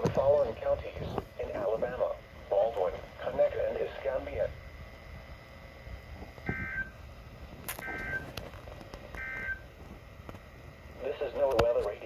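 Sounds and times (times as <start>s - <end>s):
faint radio hiss: 0.0s - 6.8s, 7.4s - 12.0s
data tone bursts: 6.5s - 7.0s, 7.8s - 8.4s, 9.2s - 9.7s.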